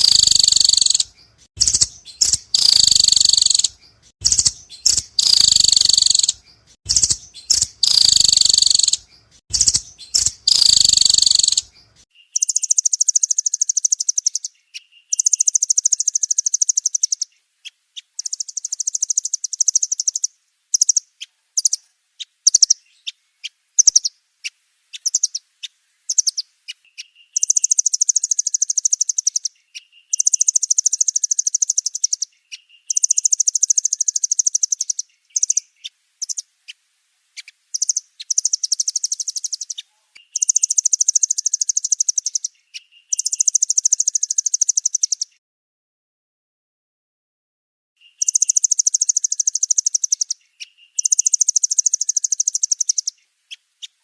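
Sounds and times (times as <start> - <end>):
nuthatches trilling: 0.0 - 17.3, 37.7 - 45.4, 48.0 - 53.1.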